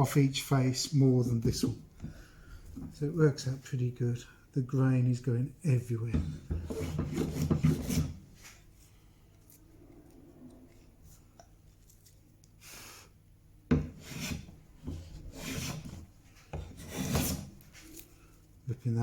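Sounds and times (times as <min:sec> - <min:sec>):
hand plane shaving wood: 0:06.6 - 0:08.2, 0:13.8 - 0:17.5.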